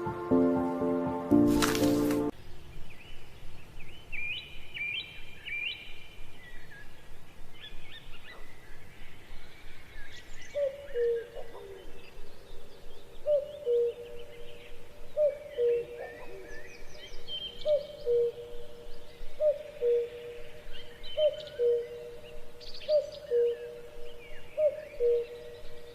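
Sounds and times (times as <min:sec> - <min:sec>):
birds chirping: 0:00.0 - 0:25.9
lower repeated bird call: 0:07.6 - 0:25.9.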